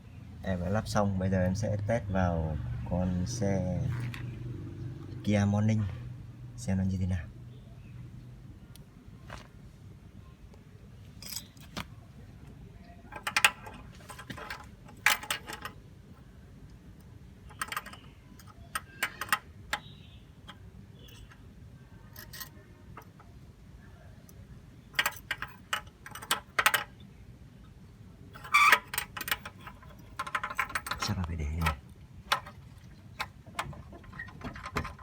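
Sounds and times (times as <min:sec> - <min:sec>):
small metal parts clicking and rattling: 0:11.2 - 0:11.8, 0:13.1 - 0:15.8, 0:17.4 - 0:21.4, 0:22.1 - 0:23.3, 0:24.9 - 0:27.0, 0:28.3 - 0:35.0.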